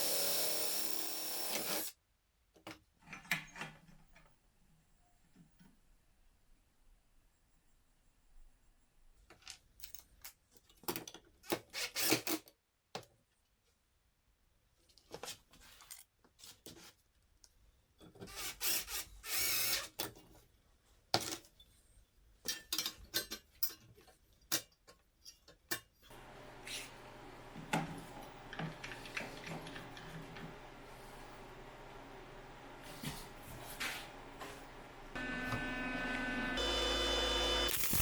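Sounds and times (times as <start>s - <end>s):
steady hum: 26.1s - 38.0s.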